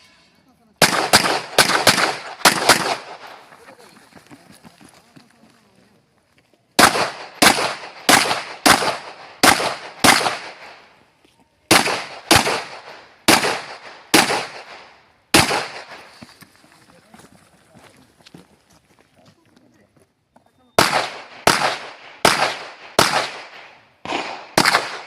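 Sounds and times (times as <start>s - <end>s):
pistol gunshots: 0.8s - 3.4s, 6.8s - 10.9s, 11.7s - 16.1s, 20.8s - 25.0s.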